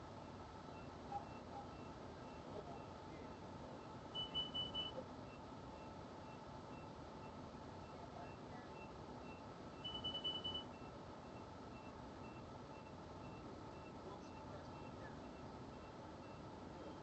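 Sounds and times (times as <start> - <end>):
faint high-pitched beep: 0.7 - 3.4, 4.1 - 17.0
rapid high beeps: 3.8 - 16.5.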